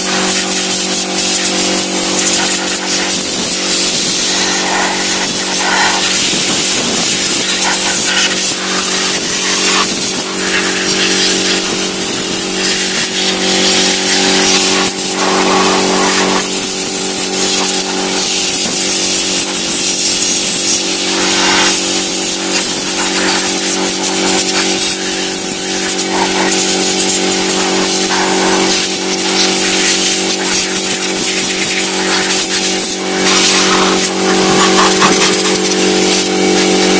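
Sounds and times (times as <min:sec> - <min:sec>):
air compressor motor running: 0:00.0 - 0:36.9
compressed air jet hissing: 0:00.0 - 0:36.9.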